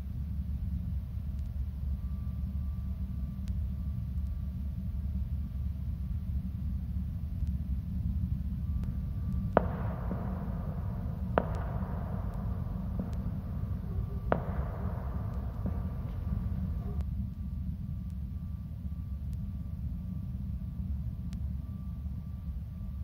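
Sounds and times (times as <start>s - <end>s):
steady low rumble: 0.0s - 23.0s
distant firework bangs: 9.5s - 17.0s.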